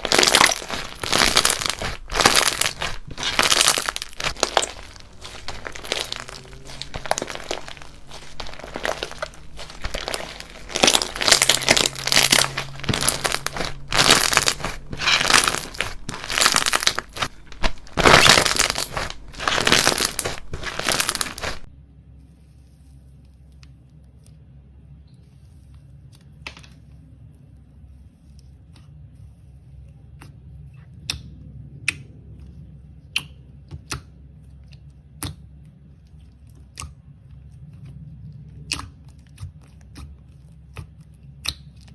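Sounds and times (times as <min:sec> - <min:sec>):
crunchy slime crackling: 0:00.0 - 0:21.7.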